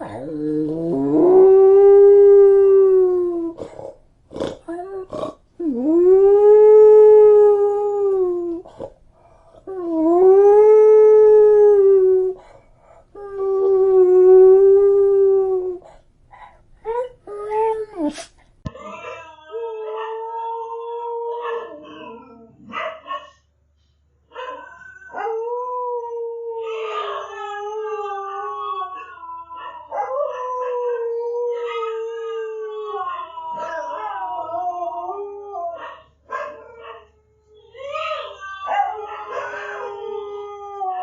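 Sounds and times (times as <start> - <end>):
dog howling: 0.0 - 3.6, 9.7 - 12.5, 13.2 - 15.9, 18.7 - 22.8, 24.4 - 41.0.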